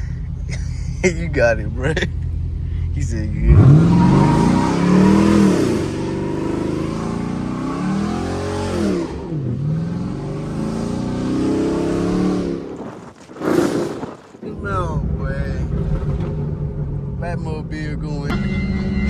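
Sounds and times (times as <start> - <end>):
car engine revving hard: 3.4 - 17.2.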